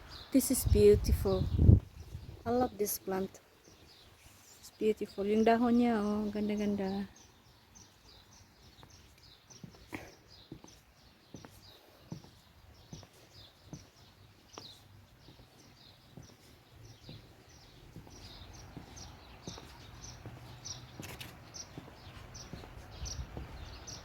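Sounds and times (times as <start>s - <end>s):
small birds chirping: 0.0s - 24.0s.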